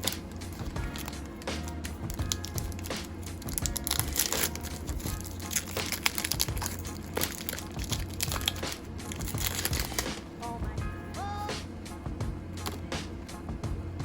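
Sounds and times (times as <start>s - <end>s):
foil wrapper crinkling: 0.0s - 10.3s.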